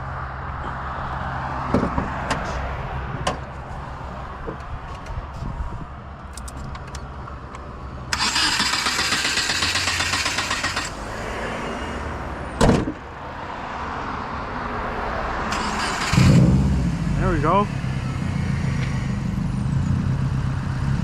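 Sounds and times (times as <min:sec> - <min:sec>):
sharp clunk: 0:12.6 - 0:13.0.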